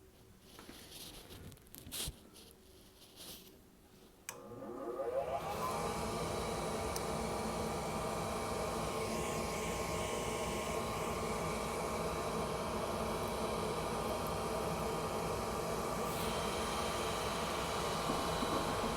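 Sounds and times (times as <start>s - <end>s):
furnace fan whining and whirring: 0.2s - 18.9s
furnace fan motor click: 4.3s - 5.8s, 6.8s - 7.2s, 14.0s - 14.4s.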